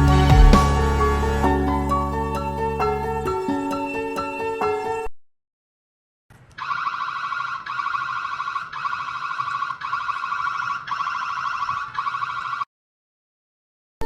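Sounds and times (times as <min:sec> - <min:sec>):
warbling electronic alarm siren: 0:06.6 - 0:12.7.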